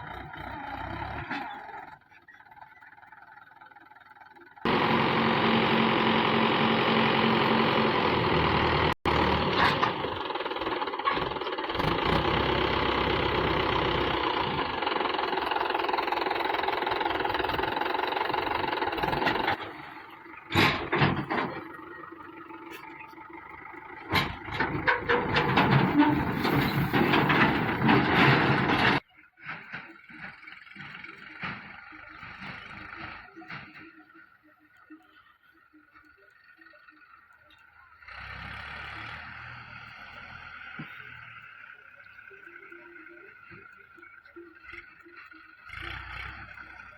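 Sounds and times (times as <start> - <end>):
heavy diesel machinery running: 0.0 - 46.9.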